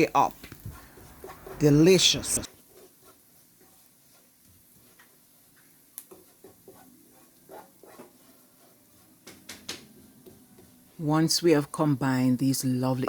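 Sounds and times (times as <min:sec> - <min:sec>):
utensil stirring in pan: 0:00.0 - 0:09.6.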